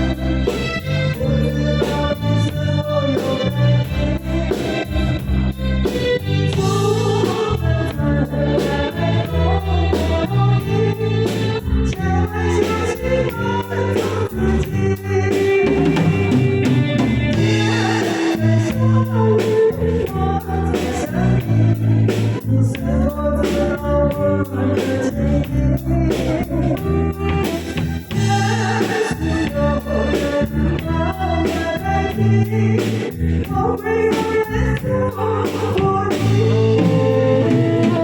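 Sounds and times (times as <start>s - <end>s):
person singing: 0.0s - 38.0s
pop ballad music: 0.0s - 38.0s
drum beat: 15.5s - 21.0s, 35.8s - 38.0s.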